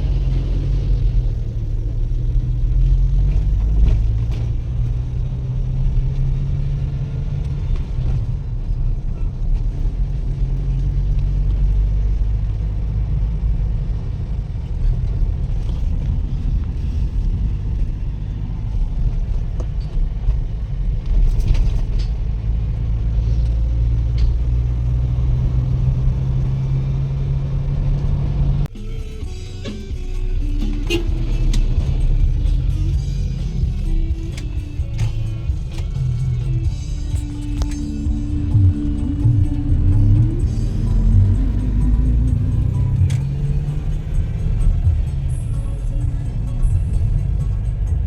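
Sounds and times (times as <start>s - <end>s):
road noise: 0.0s - 48.0s
road vehicle engine hum: 0.0s - 48.0s
low drone: 25.4s - 48.0s.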